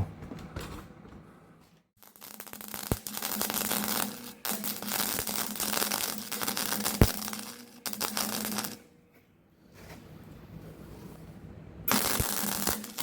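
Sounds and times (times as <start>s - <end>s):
sharp welding pop: 2.0s - 8.8s, 11.9s - 13.0s
arc welder crackling: 2.0s - 8.9s, 11.9s - 13.0s.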